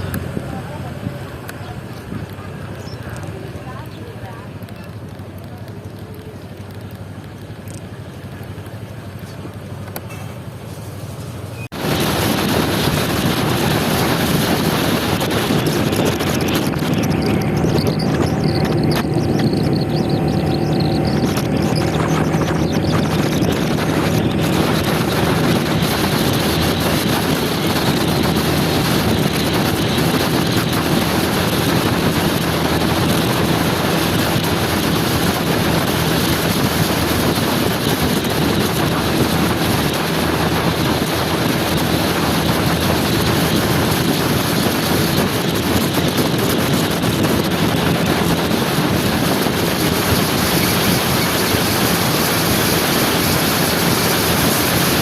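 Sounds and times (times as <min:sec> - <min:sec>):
wind rushing on microphone: 0:00.0 - 0:07.0, 0:11.5 - 0:55.0
motor scooter engine running: 0:11.7 - 0:55.0.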